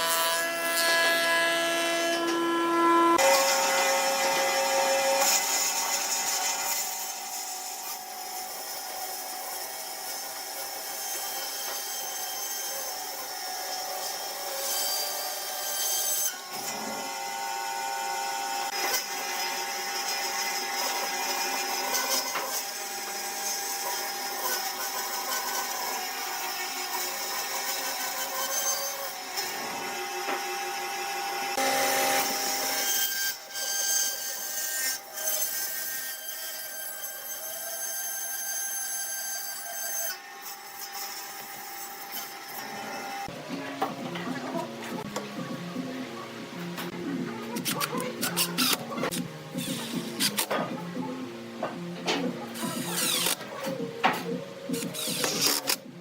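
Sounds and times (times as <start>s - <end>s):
turning tool scraping wood: 47.3s - 50.9s, 52.0s - 55.9s.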